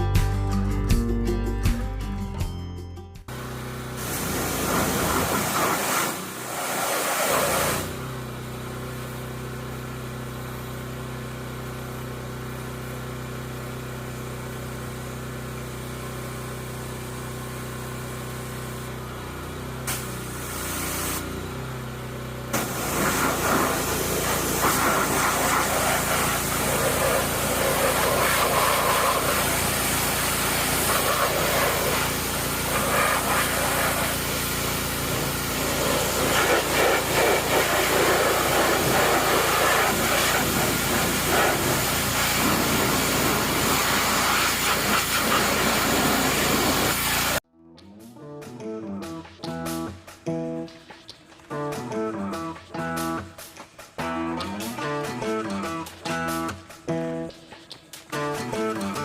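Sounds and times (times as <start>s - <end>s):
pressure washer motor humming: 3.3s - 47.4s
water spray hissing: 4.0s - 8.0s, 19.9s - 21.3s, 22.5s - 47.4s.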